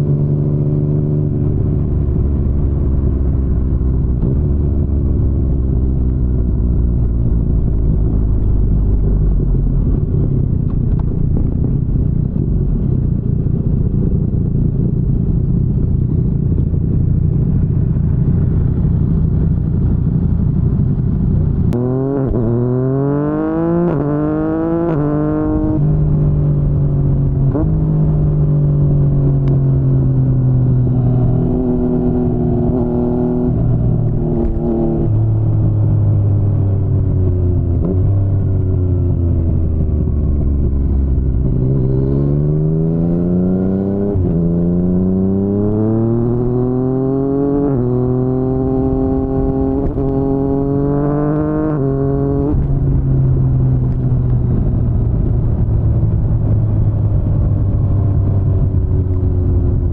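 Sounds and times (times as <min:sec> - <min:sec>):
motorcycle engine revving: 0:11.0 - 0:57.8.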